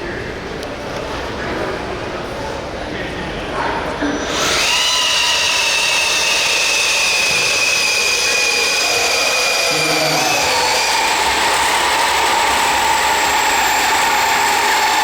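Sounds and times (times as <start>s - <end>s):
high-pitched motor whine: 4.2s - 15.0s.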